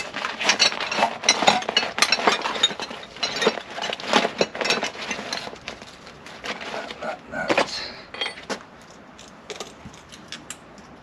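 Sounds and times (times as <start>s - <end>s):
metal tools clinking: 0.4s - 5.7s, 8.1s - 8.6s.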